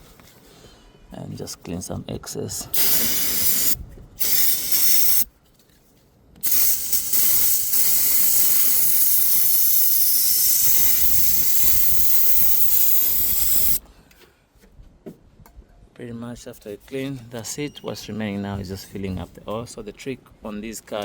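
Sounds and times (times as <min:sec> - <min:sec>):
aerosol spraying: 0:02.7 - 0:05.3, 0:06.4 - 0:13.8.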